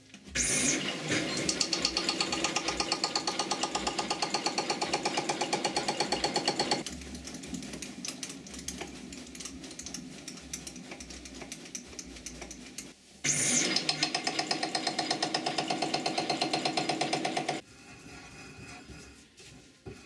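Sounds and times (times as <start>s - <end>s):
metalworking machine clatter: 0.4s - 17.6s
quiet irregular clicks and taps: 6.8s - 13.0s.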